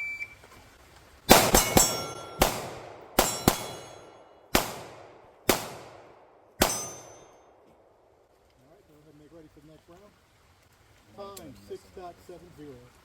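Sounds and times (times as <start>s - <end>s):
pistol shots: 1.3s - 7.7s
steel plate clanging and ringing: 1.5s - 2.4s, 3.2s - 4.2s, 6.6s - 7.4s.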